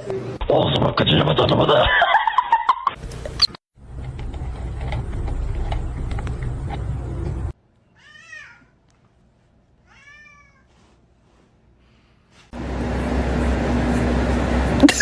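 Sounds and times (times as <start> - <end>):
loud rumbling noise with clicks: 3.8 - 7.6
cat meowing: 8.0 - 8.8, 9.8 - 10.7.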